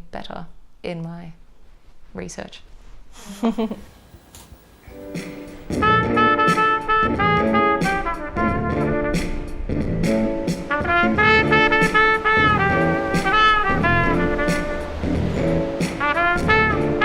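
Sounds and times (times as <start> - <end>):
lower accompaniment: 4.9 - 17.0
trumpet melody: 5.0 - 10.0, 10.6 - 17.0.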